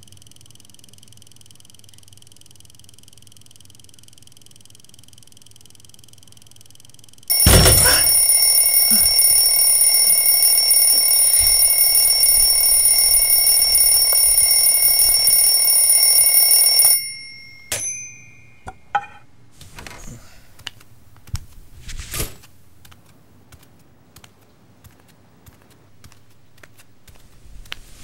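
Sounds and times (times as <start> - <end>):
alarm clock ringing: 7.3 - 18.8.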